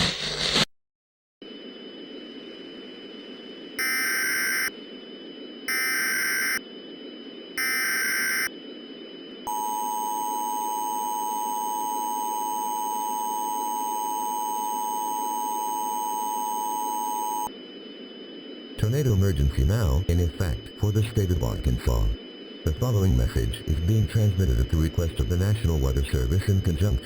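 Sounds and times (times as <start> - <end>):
data header bursts: 18.8 - 27.0
radio hiss: 18.8 - 27.0.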